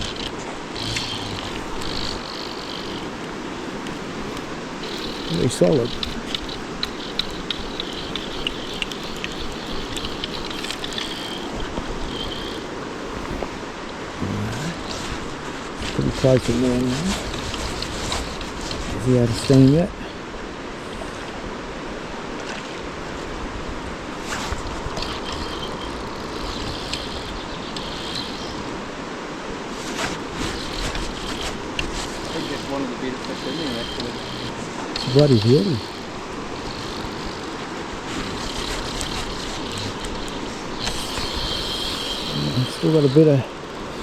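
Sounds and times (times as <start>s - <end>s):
faint ticks: 0.0s - 13.5s, 24.3s - 28.8s, 29.8s - 44.0s
river water rushing: 0.0s - 44.0s.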